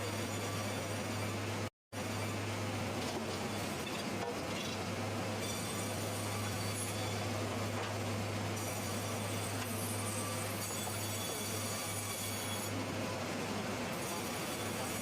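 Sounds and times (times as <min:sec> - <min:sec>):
sawmill machinery running: 0:00.0 - 0:15.0.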